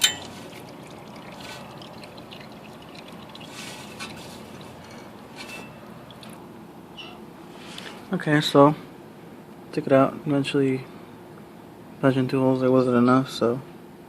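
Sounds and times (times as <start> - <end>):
oil trickling into pan: 0.0 - 6.5.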